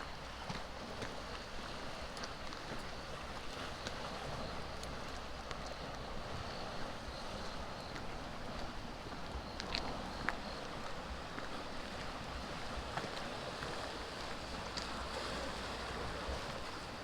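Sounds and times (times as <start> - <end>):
water noise: 0.0 - 17.0
wind: 0.0 - 17.0
faint ticks: 9.5 - 10.5.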